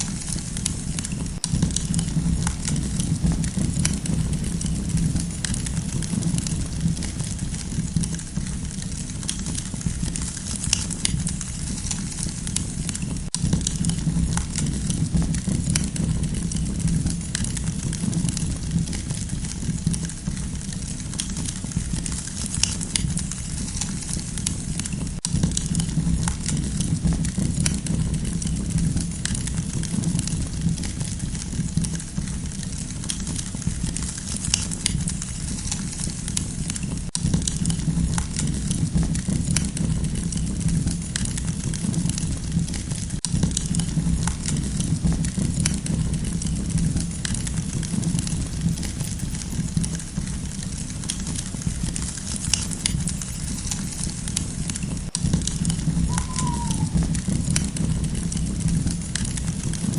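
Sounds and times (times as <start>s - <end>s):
fire pops and snaps: 0.0s - 7.7s
campfire crackling: 0.0s - 8.9s, 43.2s - 59.9s
low rumble: 43.4s - 59.9s.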